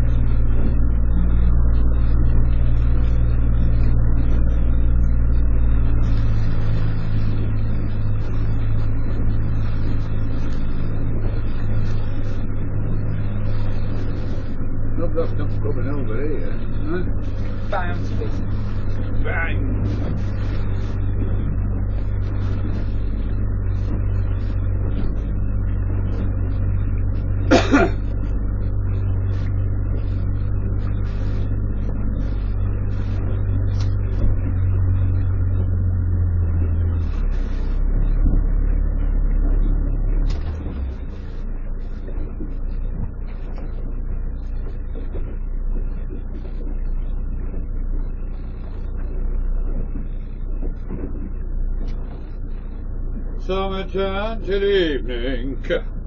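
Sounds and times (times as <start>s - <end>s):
boat engine droning: 0.0s - 56.0s.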